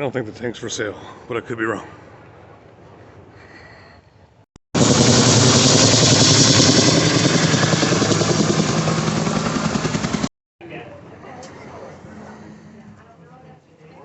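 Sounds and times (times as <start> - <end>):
large engine running loudly: 4.8 - 10.3.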